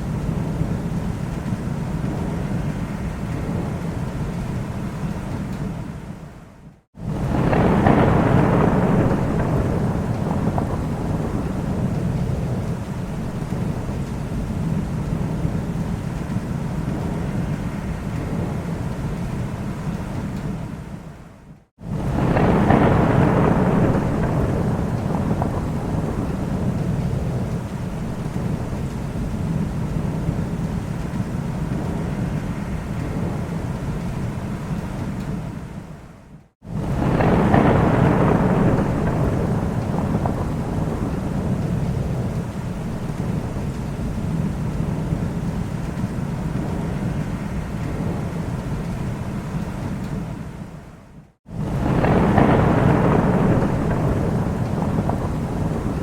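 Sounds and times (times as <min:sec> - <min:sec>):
rain: 0:00.0 - 0:56.0
thunder rumble: 0:00.0 - 0:56.0.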